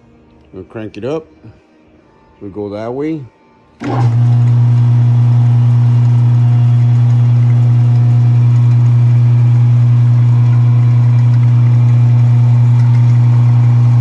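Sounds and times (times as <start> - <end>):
electric motor humming: 3.8 - 14.0.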